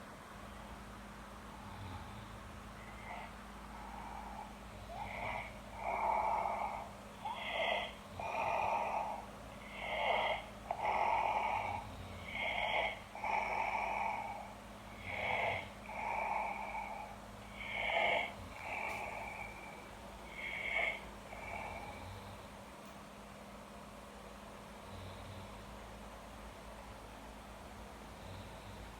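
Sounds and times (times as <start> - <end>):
man snoring: 1.6 - 22.6.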